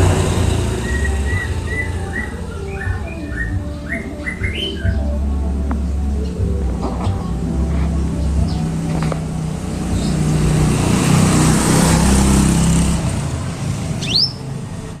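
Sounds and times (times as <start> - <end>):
vehicle passing: 0.0 - 3.7, 5.9 - 15.0
bird chirp: 0.6 - 9.0, 9.7 - 10.4, 14.0 - 14.5.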